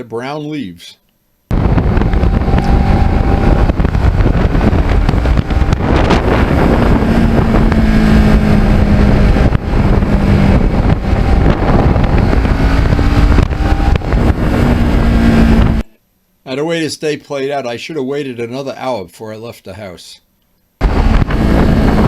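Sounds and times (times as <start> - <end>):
motorcycle engine running: 1.5 - 15.8, 20.8 - 22.0
wind rush: 1.5 - 15.9, 20.8 - 22.0.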